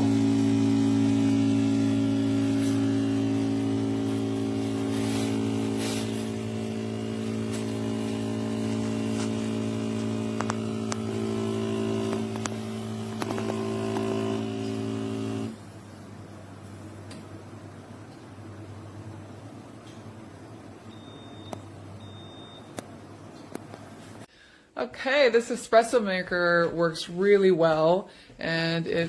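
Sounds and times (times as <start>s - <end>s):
espresso machine pump humming: 0.0s - 22.5s.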